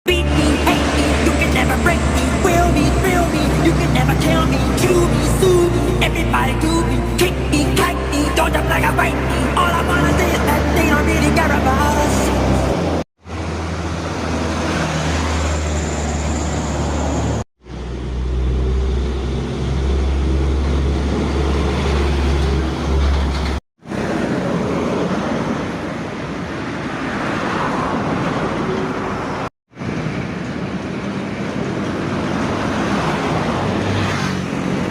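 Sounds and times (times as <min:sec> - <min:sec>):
low engine drone: 0:00.1 - 0:26.1
road traffic noise: 0:00.1 - 0:34.9.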